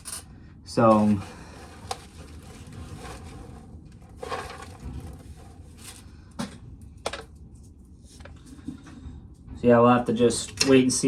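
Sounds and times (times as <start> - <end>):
corn cob rubbing and rustling: 0.8 - 6.1.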